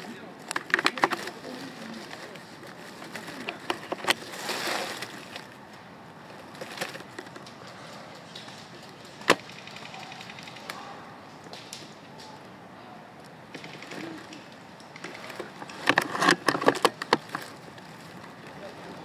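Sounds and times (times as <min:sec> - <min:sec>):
low outdoor noise: 0:00.0 - 0:19.0.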